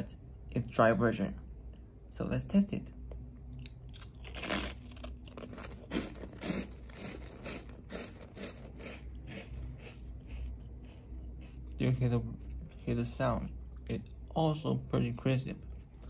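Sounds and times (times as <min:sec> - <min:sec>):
crunchy chewing: 0:03.5 - 0:14.4, 0:15.5 - 0:16.0.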